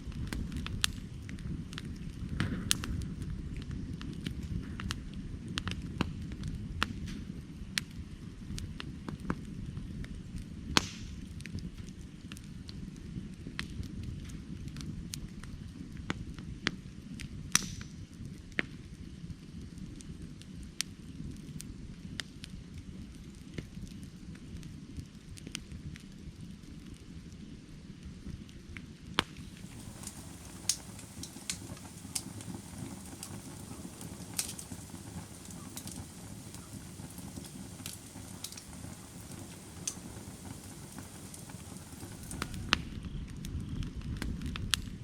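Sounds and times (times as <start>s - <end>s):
low rumble of flame: 0.0s - 45.0s
wood crackling and popping: 0.0s - 45.0s
loud sharp pop: 10.7s - 11.2s.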